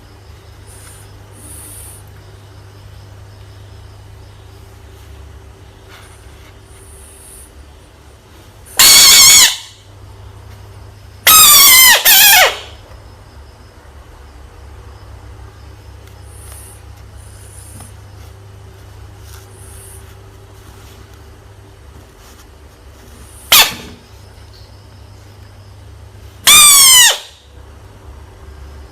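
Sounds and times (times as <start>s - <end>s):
steady low hum: 0.0s - 28.9s
frog screaming: 8.8s - 9.8s, 11.2s - 12.8s, 26.4s - 27.4s.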